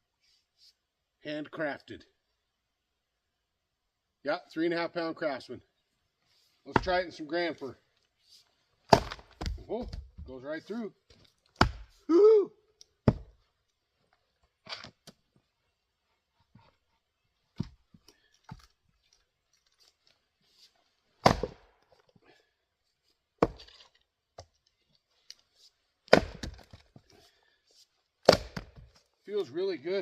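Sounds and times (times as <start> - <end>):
axe chopping firewood: 6.7 - 7.1, 8.8 - 10.3, 11.5 - 12.0, 13.0 - 13.4, 17.6 - 18.7, 21.2 - 21.8, 23.4 - 24.5, 26.0 - 27.3, 28.2 - 29.1.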